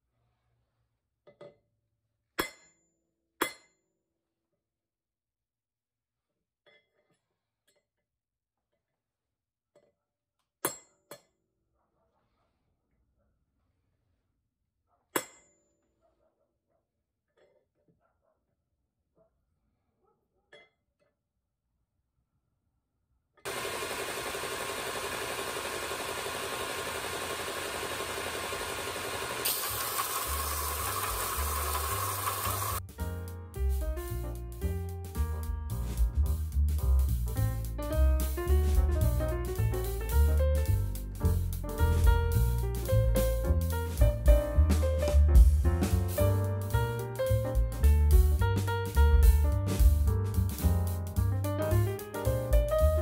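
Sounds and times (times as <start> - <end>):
metal grinding power tool: 23.5 - 32.8.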